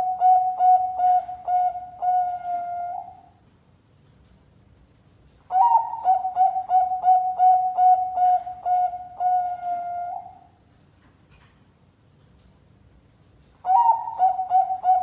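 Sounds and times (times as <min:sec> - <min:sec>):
dove cooing: 0:00.0 - 0:03.3, 0:05.5 - 0:10.5, 0:13.6 - 0:15.0.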